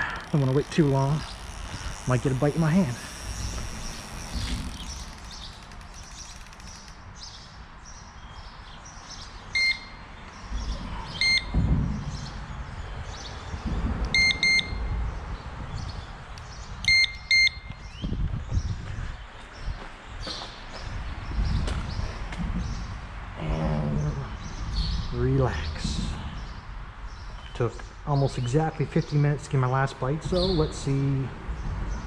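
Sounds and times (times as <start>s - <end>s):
wind rumble on microphone: 0.0s - 32.0s
bite alarm beeps: 9.6s - 10.0s, 11.1s - 11.6s, 14.1s - 14.9s, 16.8s - 17.9s.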